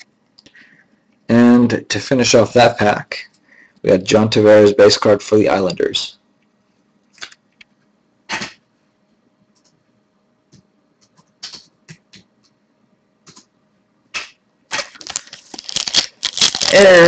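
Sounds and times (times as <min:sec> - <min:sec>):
cards and foil pack rustling: 0:14.8 - 0:17.0.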